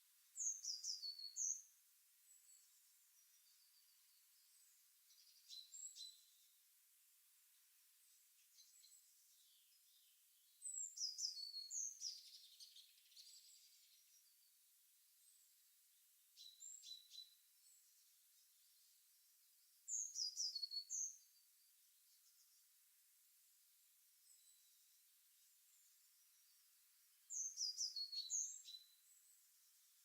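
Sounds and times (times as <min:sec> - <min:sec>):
faint steady hiss: 0:00.0 - 0:30.0
bird singing high chirps: 0:00.4 - 0:01.7, 0:08.6 - 0:14.3, 0:16.4 - 0:17.4, 0:19.9 - 0:21.4, 0:27.3 - 0:29.4.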